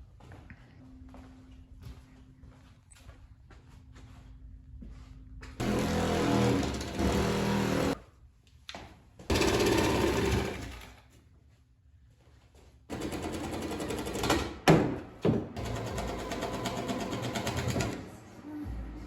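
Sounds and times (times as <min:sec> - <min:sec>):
power tool pulsing buzz: 0:05.6 - 0:08.0, 0:09.3 - 0:10.8.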